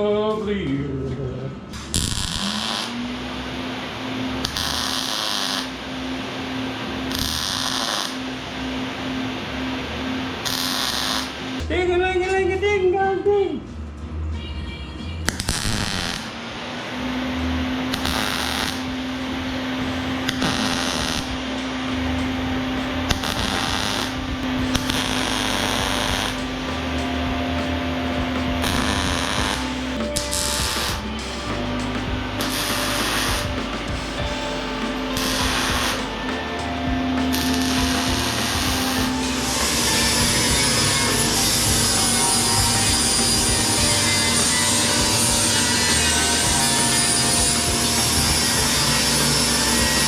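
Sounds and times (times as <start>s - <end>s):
steady hum: 0.0s - 50.0s
crackling welding arc: 1.7s - 11.6s, 15.3s - 50.0s
harsh grinding bursts: 1.7s - 11.7s, 15.4s - 50.0s
electric power tool motor: 34.3s - 36.3s, 37.3s - 50.0s.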